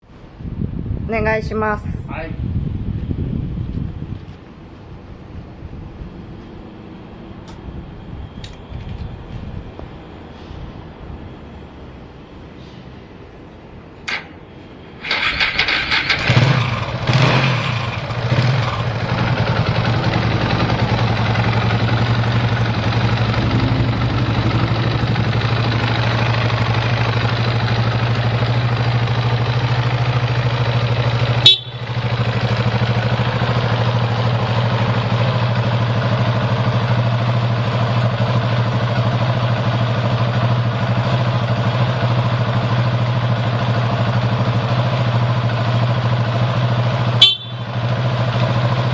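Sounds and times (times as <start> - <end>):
motorcycle engine revving and idling: 15.0 - 48.9.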